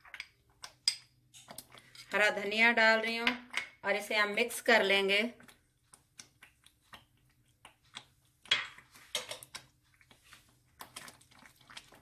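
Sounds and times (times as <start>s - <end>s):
spoon scraping a pan: 0.9s - 2.4s.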